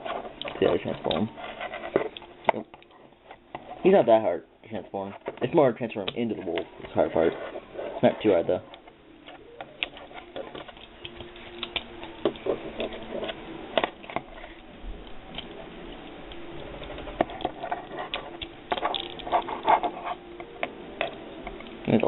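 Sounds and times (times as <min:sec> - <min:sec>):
plastic toy parts clicking: 0:17.3 - 0:19.7.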